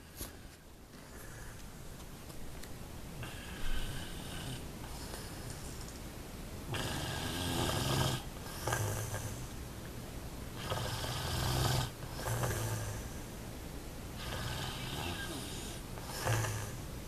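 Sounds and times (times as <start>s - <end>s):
person snoring: 6.7s - 9.5s, 10.6s - 13.3s, 14.2s - 16.9s.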